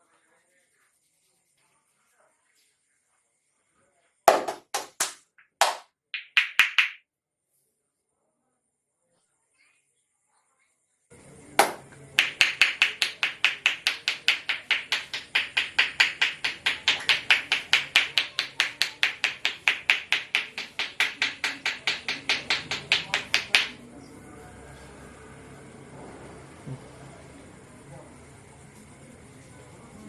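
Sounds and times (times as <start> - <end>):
hands slapping in rhythm: 4.3 - 7.0, 11.6 - 23.8.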